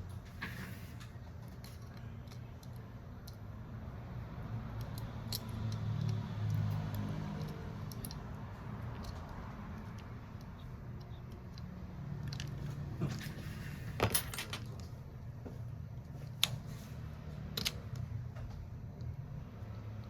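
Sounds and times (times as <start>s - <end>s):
metal tools clinking: 13.6s - 14.8s.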